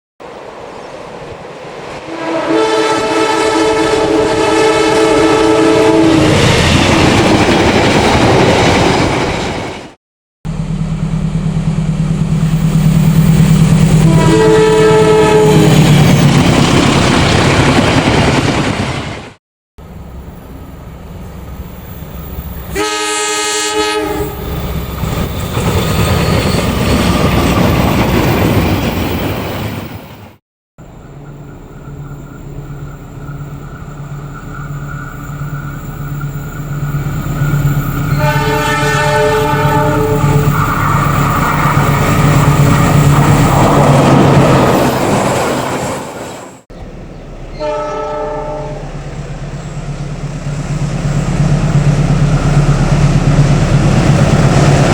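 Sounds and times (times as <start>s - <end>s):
train horn blasts: 2.0s - 6.3s, 13.9s - 15.8s, 22.7s - 24.5s, 37.4s - 40.9s, 47.5s - 49.0s.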